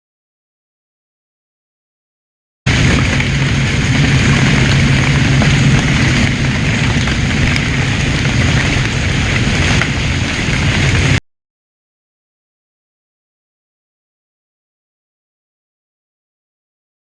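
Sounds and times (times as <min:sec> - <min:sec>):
heavy rain: 0:02.7 - 0:11.2
low rumble: 0:02.7 - 0:11.2.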